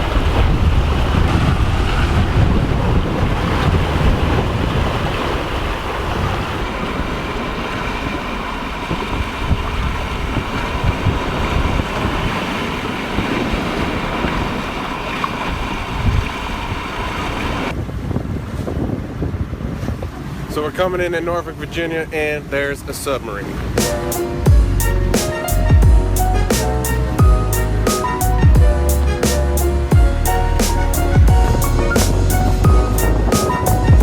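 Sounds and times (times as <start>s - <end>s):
wind buffeting microphone: 0.0s - 22.4s, 23.4s - 34.0s
water rushing past hull: 0.0s - 34.0s.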